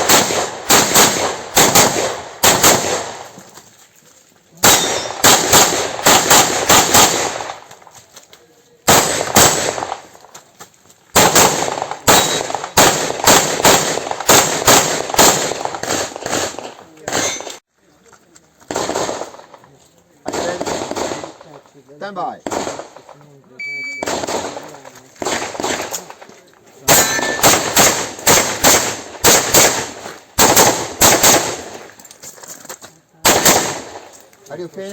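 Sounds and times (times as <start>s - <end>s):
handgun shots: 4.6s - 7.6s, 11.2s - 17.6s.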